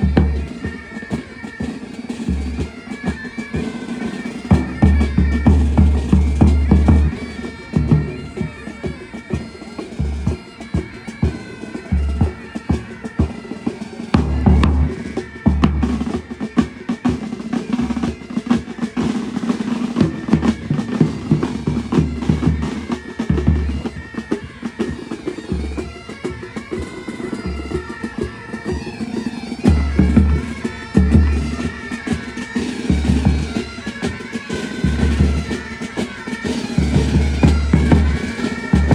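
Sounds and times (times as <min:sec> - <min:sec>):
bagpipes: 0:00.0 - 0:38.9
snare drum strokes: 0:11.2 - 0:26.8, 0:29.2 - 0:38.9
bass drum beats: 0:14.2 - 0:16.0.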